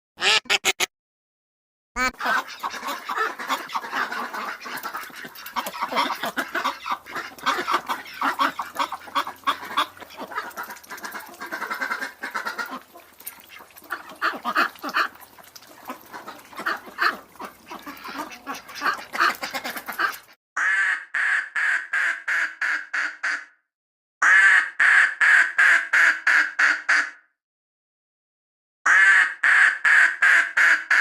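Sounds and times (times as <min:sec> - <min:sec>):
ducks quacking: 0:02.0 - 0:23.4.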